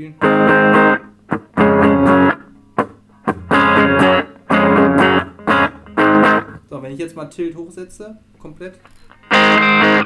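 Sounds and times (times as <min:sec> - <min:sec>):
electric guitar chord stabs: 0:00.0 - 0:06.7, 0:09.0 - 0:10.0.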